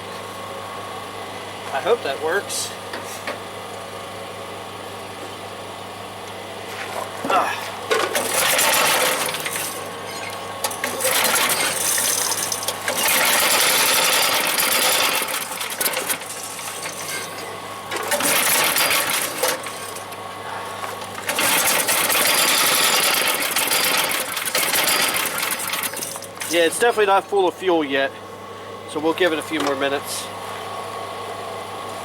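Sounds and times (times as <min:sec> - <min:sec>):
small engine cranking: 0:08.2 - 0:17.0, 0:18.0 - 0:20.0, 0:21.2 - 0:26.6.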